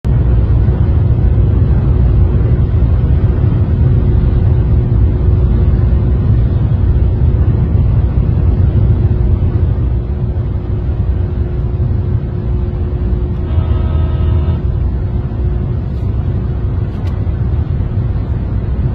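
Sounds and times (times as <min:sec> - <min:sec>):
wind buffeting microphone: 0:00.0 - 0:13.5
faint steady hum: 0:00.1 - 0:18.9.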